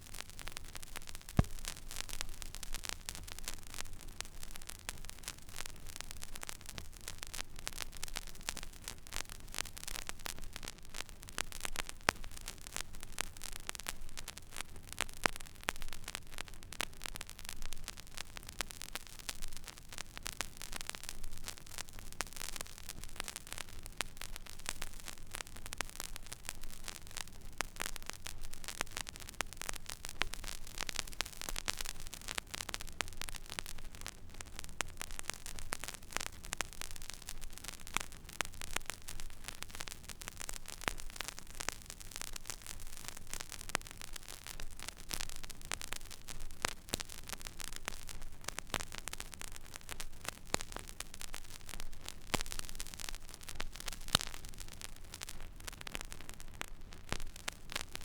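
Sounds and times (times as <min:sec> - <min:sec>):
vinyl crackles and pops: 0:00.0 - 0:58.0
vinyl surface hiss: 0:01.0 - 0:02.9.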